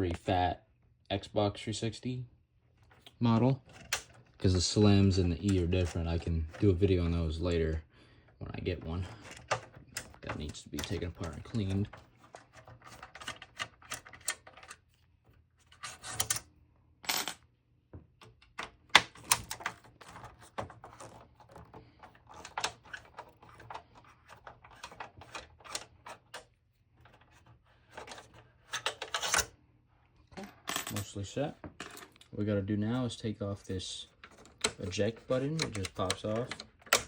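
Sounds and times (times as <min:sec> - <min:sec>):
plastic parts clicking and clattering: 0:02.8 - 0:07.2, 0:08.3 - 0:15.0, 0:15.6 - 0:16.5, 0:18.2 - 0:29.5, 0:33.6 - 0:37.0.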